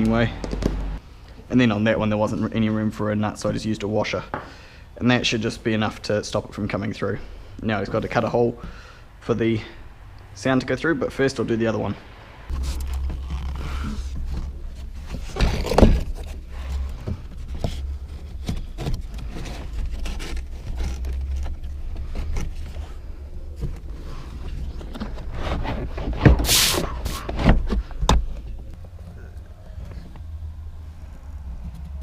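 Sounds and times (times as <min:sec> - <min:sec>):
plastic parts clicking and scraping: 0:12.5 - 0:29.1
hissing scrape: 0:25.3 - 0:27.4.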